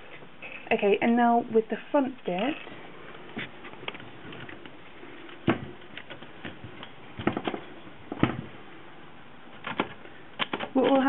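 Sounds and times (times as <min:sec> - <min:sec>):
typewriter clicks and knocks: 0:09.6 - 0:11.0.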